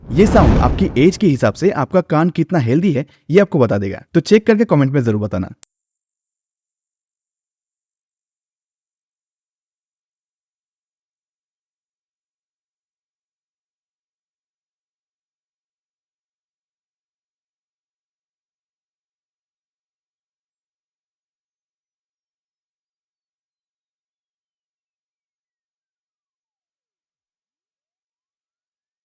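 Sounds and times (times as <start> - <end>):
pulsing high-pitched pure tone: 5.7 - 26.7.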